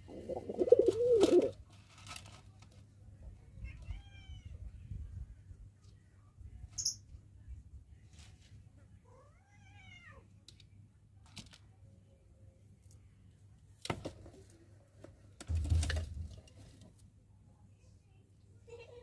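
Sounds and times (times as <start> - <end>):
meow-like animal call: 3.6 - 4.6, 9.1 - 10.2.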